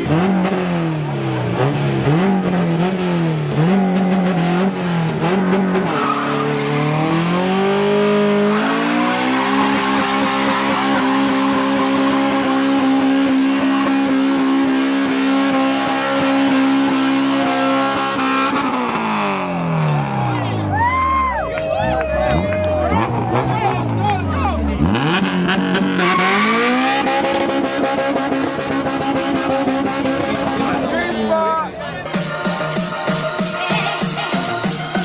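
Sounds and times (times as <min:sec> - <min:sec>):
car engine revving: 0:00.0 - 0:20.7, 0:21.8 - 0:35.0
tyres squealing: 0:05.2 - 0:07.6, 0:08.8 - 0:13.3.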